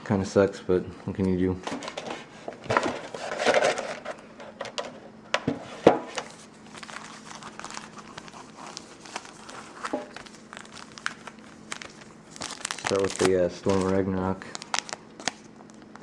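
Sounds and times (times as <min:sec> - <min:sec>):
foil packs crinkling: 0:06.2 - 0:16.0.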